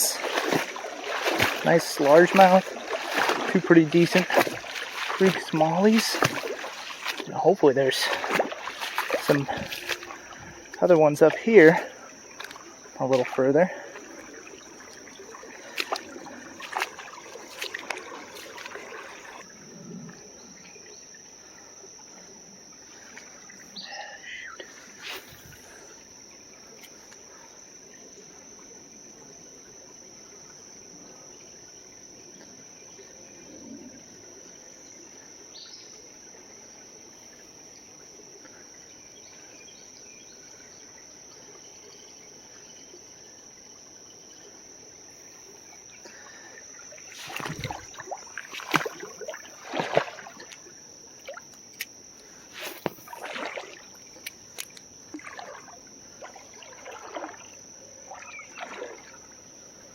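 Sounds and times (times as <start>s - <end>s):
scuffing and splashing: 0.0s - 19.4s, 47.1s - 50.6s, 52.5s - 57.5s
creek flowing: 0.0s - 19.5s, 47.0s - 50.6s, 52.5s - 59.2s
insects droning: 0.0s - 59.9s.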